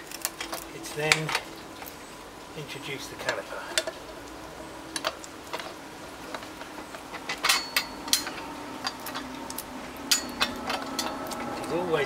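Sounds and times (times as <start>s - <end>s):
light metallic clicks and clinks: 7.2s - 9.3s, 10.0s - 11.8s.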